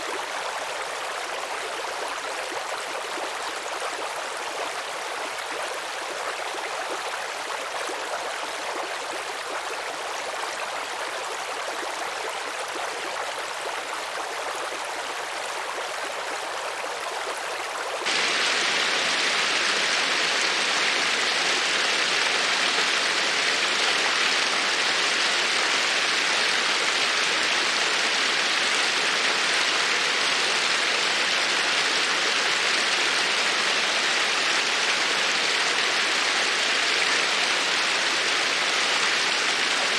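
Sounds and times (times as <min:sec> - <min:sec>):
stream flowing: 0:16.9 - 0:39.9.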